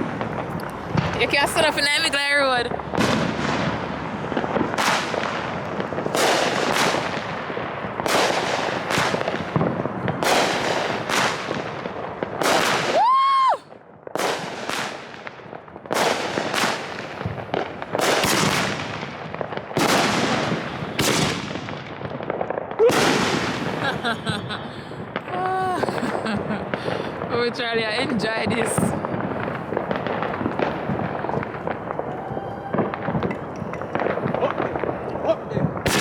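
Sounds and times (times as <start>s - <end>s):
fireworks bangs: 0.0s - 36.0s
fireworks crackle: 0.0s - 36.0s
rising firework whistle: 12.5s - 13.8s, 22.8s - 26.7s, 30.3s - 35.1s.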